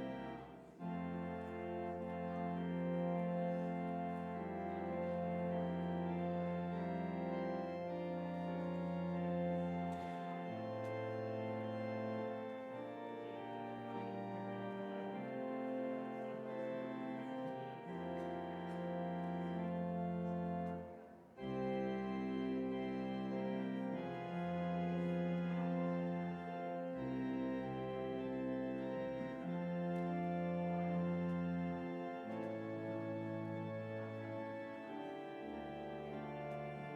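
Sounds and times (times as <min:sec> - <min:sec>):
organ playing slow chords: 0:00.0 - 0:36.9.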